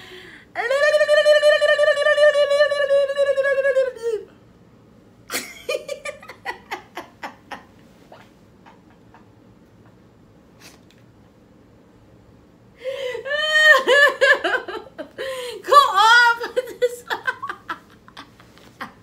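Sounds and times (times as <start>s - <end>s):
person laughing: 5.3s - 7.7s, 8.6s - 9.4s, 13.1s - 19.0s.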